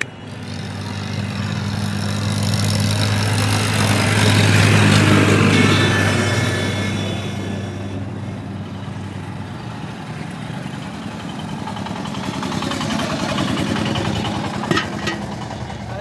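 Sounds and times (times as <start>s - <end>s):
traffic noise: 0.0s - 0.2s.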